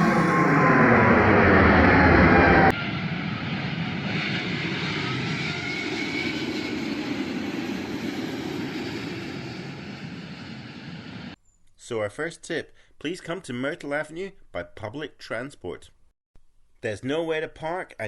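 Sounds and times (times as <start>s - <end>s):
jet engines roaring overhead: 0.0s - 11.4s.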